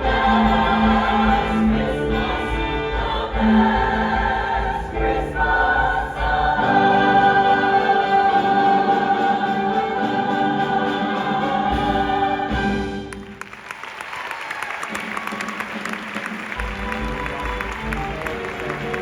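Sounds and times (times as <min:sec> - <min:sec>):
choir singing: 0:00.0 - 0:13.2
audience applause: 0:13.1 - 0:19.0.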